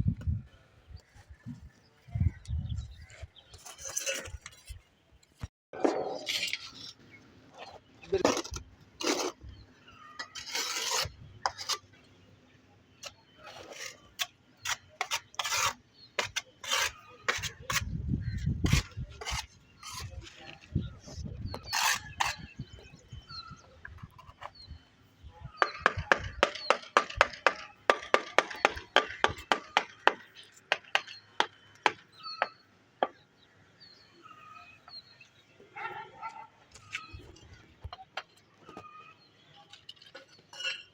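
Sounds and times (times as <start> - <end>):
tools scraping mortar and tile: 3.2 - 4.9, 5.8 - 9.6, 10.2 - 12.1, 13.0 - 24.8, 36.7 - 40.9
birds chirping: 9.0 - 40.9.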